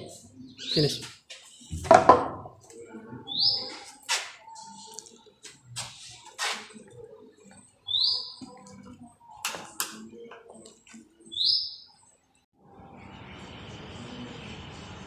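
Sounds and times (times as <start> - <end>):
bird chirping: 0.0 - 2.0, 3.2 - 4.9, 7.8 - 8.6, 11.2 - 12.2.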